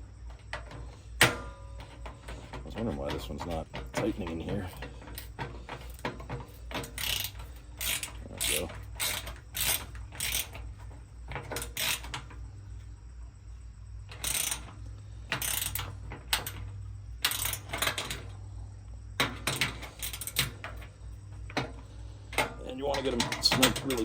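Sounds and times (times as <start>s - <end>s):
wrench tightening metal bolts: 3.0s - 10.6s, 11.5s - 12.3s, 14.1s - 14.7s, 15.3s - 16.6s, 17.2s - 18.2s.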